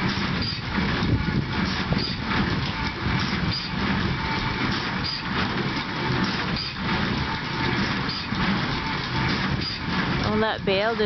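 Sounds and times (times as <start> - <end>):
hay baler mechanical stroke: 0.0 - 11.0
tractor engine droning: 0.0 - 11.0.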